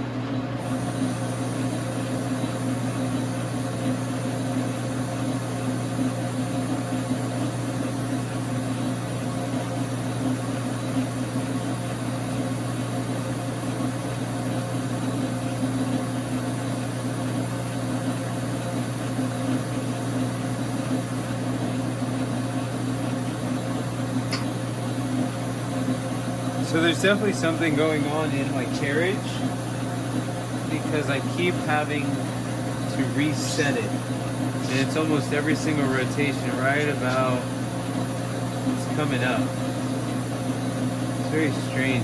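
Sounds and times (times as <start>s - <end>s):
lathe motor humming: 0.0s - 42.0s
sharp click: 24.3s - 24.5s.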